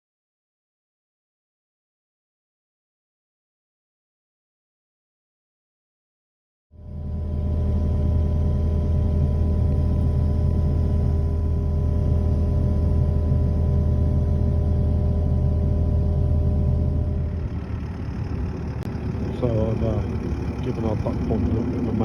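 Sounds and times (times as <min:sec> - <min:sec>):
diesel engine running steadily: 0:06.8 - 0:22.0.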